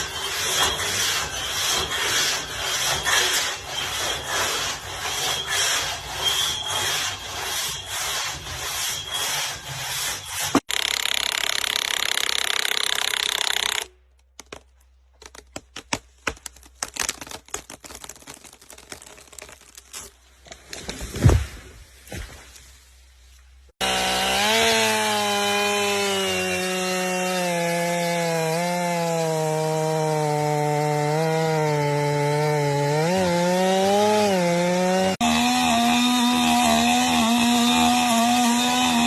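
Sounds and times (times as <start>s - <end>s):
hand tool strokes on wood: 0.0s - 10.7s.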